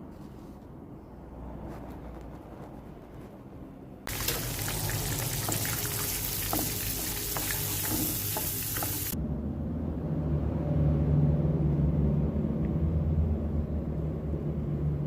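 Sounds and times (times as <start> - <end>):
food sizzling in a frying pan: 4.1 - 9.2.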